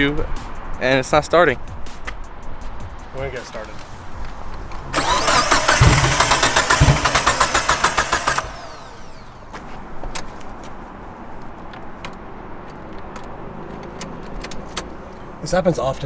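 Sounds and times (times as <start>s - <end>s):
car engine cranking on starter: 4.5s - 9.6s.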